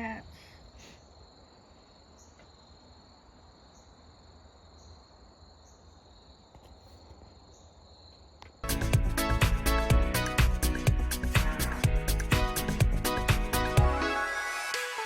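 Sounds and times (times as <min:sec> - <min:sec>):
insect chirp: 0:00.0 - 0:08.6
insects trilling: 0:00.0 - 0:08.6.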